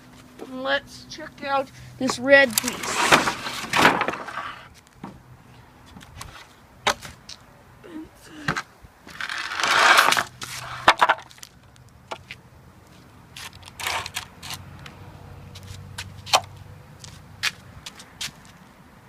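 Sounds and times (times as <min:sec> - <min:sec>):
wood scraping: 0:02.0 - 0:05.2, 0:08.5 - 0:12.4, 0:13.4 - 0:14.6.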